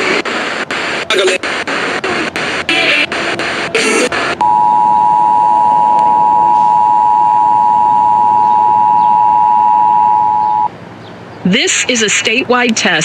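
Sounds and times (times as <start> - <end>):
harsh noise burst: 0.0 - 6.9.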